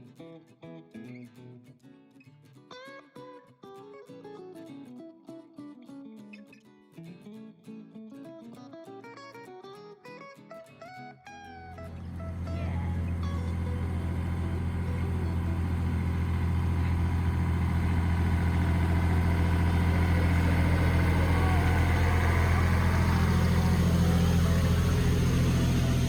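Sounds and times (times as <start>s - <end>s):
vehicle engine humming: 11.8s - 26.0s.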